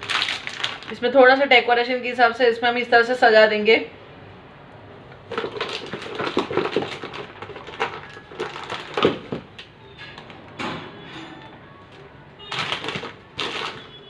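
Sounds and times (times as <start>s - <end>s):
toppings clicking and crinkling: 0.0s - 1.2s, 5.0s - 14.0s.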